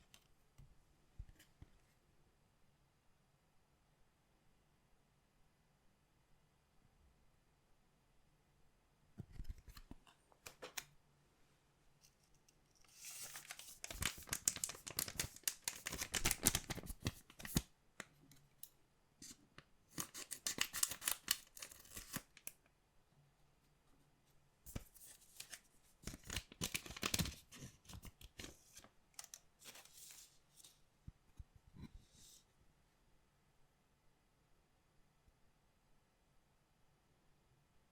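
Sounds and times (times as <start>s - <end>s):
card packaging rustling and clicking: 12.9s - 17.6s, 19.9s - 22.5s, 24.7s - 30.3s.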